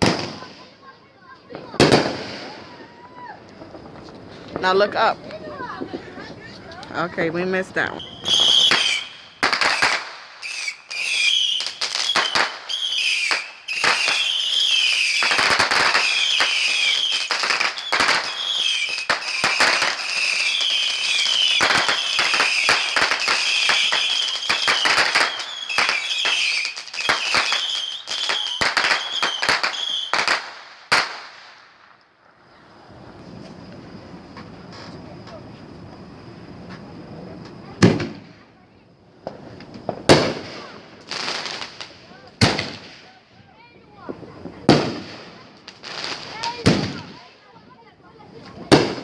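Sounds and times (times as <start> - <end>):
fireworks bangs and crackles: 0.0 - 49.0
warbling firework whistles: 1.7 - 4.5, 7.8 - 31.6.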